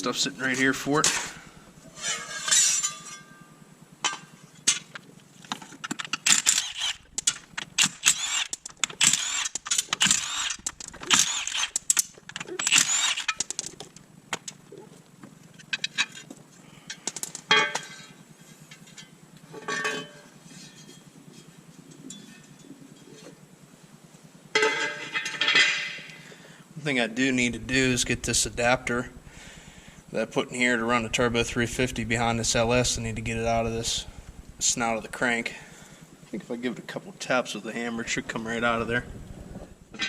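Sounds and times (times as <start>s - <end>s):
power wrench bursts: 1.0s - 2.8s, 5.8s - 13.9s, 27.4s - 36.2s.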